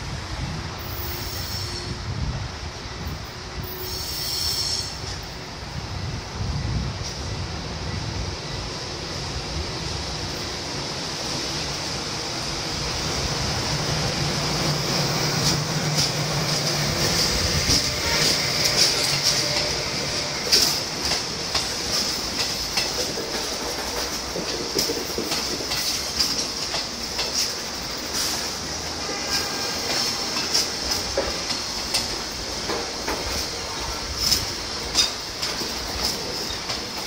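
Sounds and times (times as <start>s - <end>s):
steady hiss: 0.0s - 37.0s
train wheels clacking on rails: 11.2s - 37.0s.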